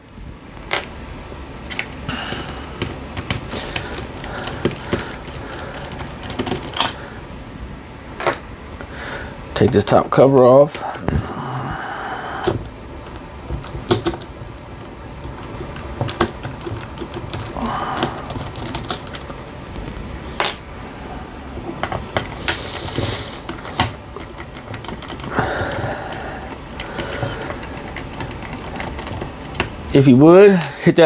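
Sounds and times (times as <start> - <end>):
clicks and clatter of small parts: 1.7 - 7.0, 12.4 - 19.4, 21.7 - 30.0.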